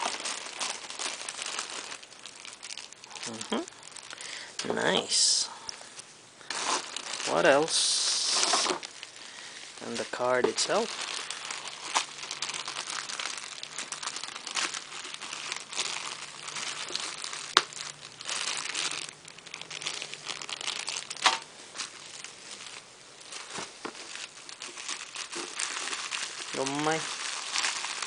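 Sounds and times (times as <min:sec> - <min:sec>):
packaging crinkling and rustling: 0:00.0 - 0:05.1, 0:05.9 - 0:28.0.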